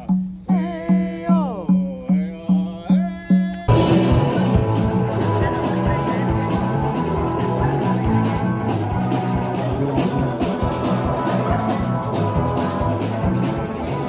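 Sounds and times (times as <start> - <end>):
steady drum beat: 0.0 - 14.0
held instrument tones: 3.5 - 14.0.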